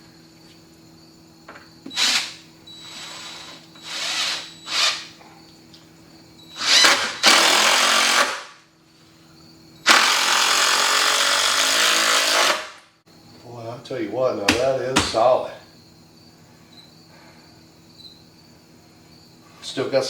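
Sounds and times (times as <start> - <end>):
impact driver driving screws: 9.9 - 12.8.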